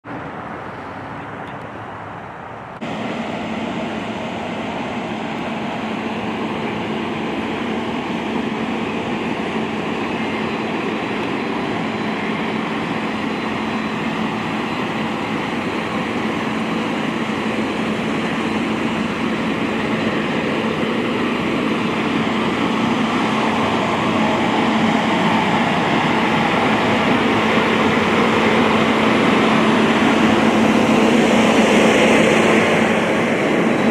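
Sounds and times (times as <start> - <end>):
machinery droning: 2.8 - 33.9.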